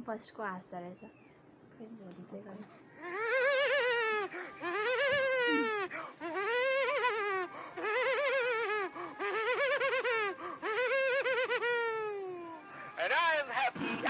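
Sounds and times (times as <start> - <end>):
high-pitched warbling laugh: 3.2 - 5.8, 13.8 - 14.0.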